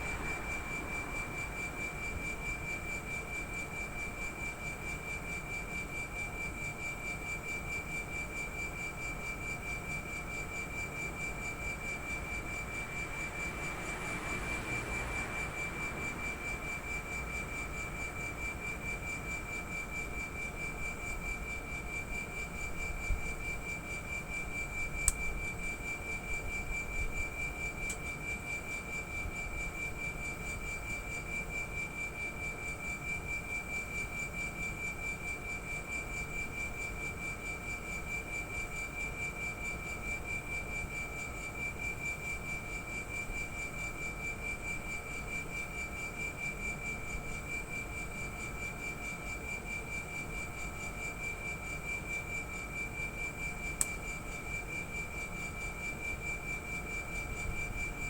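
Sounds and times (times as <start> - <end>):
compressor high-pitched whine: 0.0 - 58.0.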